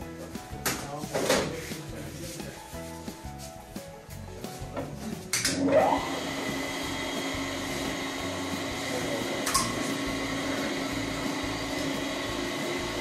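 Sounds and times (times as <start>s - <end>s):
electric motor whine and hum: 5.6s - 13.0s.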